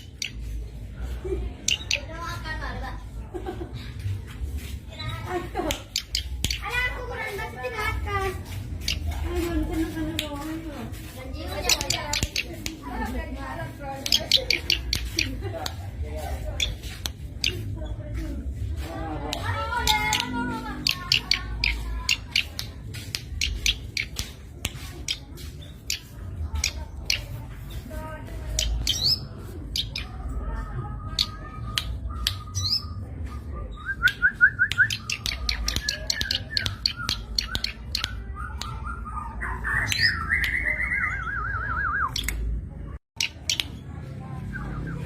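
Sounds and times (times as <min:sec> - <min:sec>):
bird chirping and trilling: 0:00.0 - 0:00.8, 0:01.6 - 0:02.6, 0:04.8 - 0:09.7, 0:11.0 - 0:18.0, 0:19.3 - 0:42.6, 0:43.2 - 0:45.0
sharp clicks: 0:34.0 - 0:38.8, 0:42.0 - 0:42.6.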